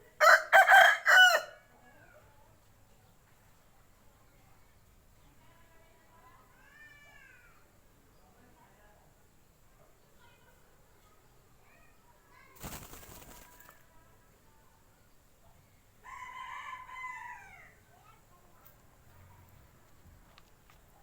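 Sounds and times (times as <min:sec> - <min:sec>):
rooster crowing: 0:00.2 - 0:01.6, 0:16.0 - 0:17.8
rooster wings fluttering: 0:12.5 - 0:13.9.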